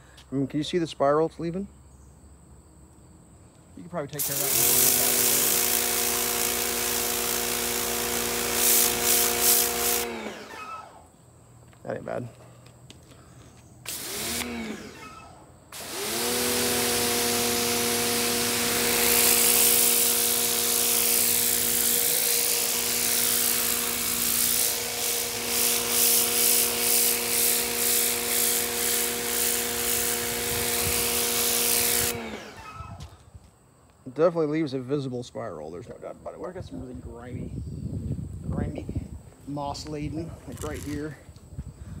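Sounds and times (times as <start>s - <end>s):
water jet hissing on concrete: 4.2s - 10.1s, 15.8s - 32.2s
pressure washer pump motor humming: 4.2s - 11.0s, 13.9s - 33.0s.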